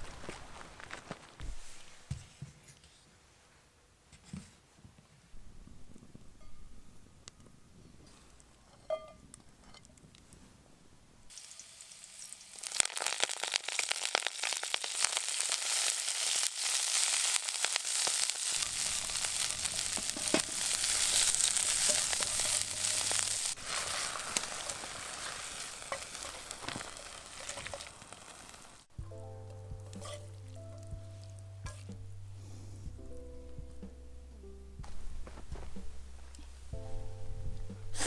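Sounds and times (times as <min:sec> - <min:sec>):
food sizzling in hot oil: 0:11.3 - 0:28.9
background music: 0:28.9 - 0:38.0.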